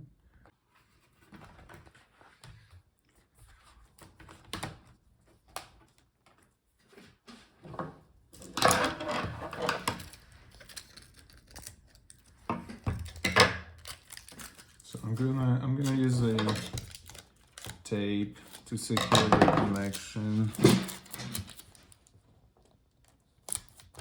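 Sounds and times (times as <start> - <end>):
rustling and scraping: 18.4 - 22.2.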